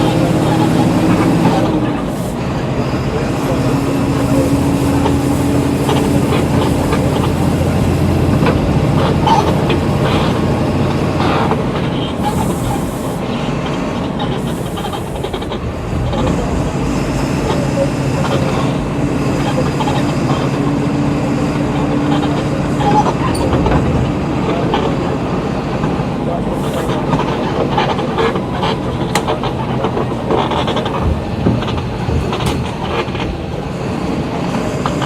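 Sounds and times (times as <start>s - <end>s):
bus diesel engine running: 0.0s - 35.0s.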